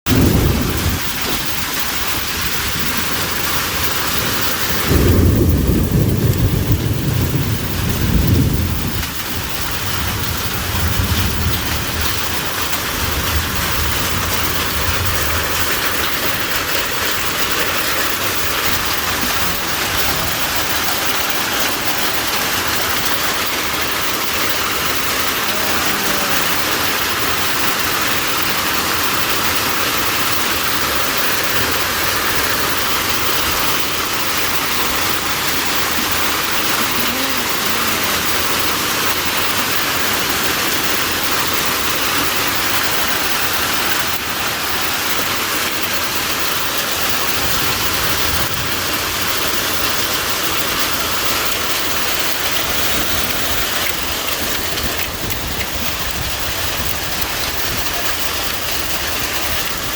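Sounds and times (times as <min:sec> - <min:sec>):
heavy rain and hail: 0:00.0 - 0:59.9
thunder rumbling: 0:00.1 - 0:45.0.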